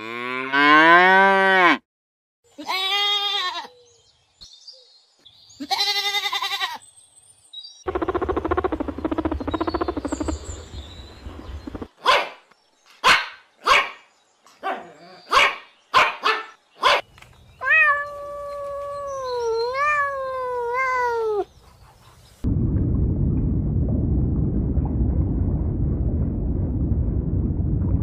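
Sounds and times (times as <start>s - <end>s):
pulsing growl: 7.9s - 11.9s
short sharp barks: 12.0s - 12.4s, 14.6s - 17.0s.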